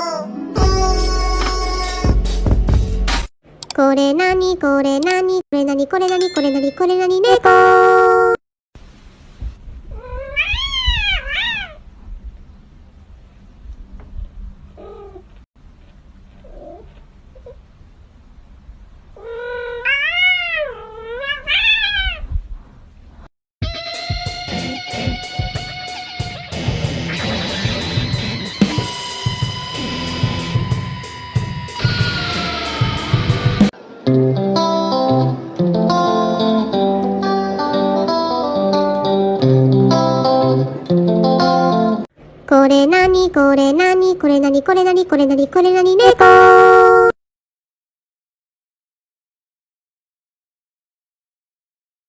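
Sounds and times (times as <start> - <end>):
cat meowing: 9.9 - 11.8, 19.2 - 22.3
electric guitar music: 23.6 - 42.0
plucked guitar tune: 34.0 - 42.0.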